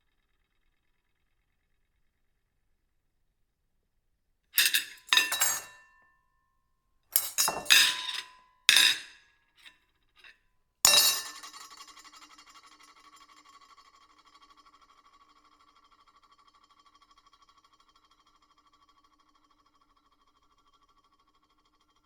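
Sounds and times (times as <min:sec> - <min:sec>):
ceramic plates clinking: 0:04.6 - 0:05.8, 0:07.2 - 0:09.1, 0:10.9 - 0:11.6.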